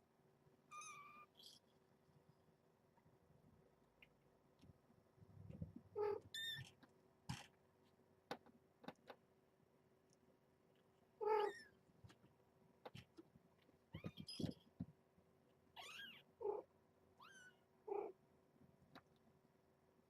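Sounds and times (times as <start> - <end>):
small clicks and knocks: 8.3 - 9.2
cats mewing: 11.2 - 11.7, 15.8 - 18.2.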